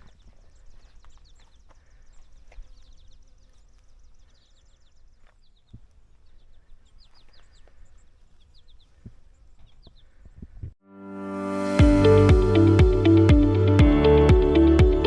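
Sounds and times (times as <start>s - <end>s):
small songbirds chirping: 0.0s - 10.8s.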